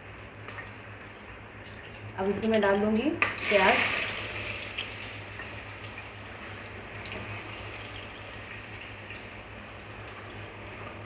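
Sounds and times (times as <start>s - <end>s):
onions sizzling in oil: 3.2s - 11.0s.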